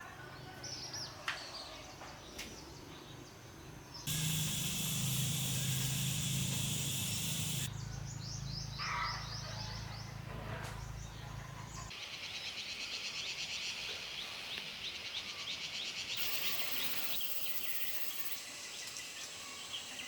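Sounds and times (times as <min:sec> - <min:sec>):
small birds chirping: 0:03.9 - 0:10.0, 0:16.1 - 0:18.9
loud steady high hiss: 0:04.1 - 0:07.7, 0:16.2 - 0:18.7.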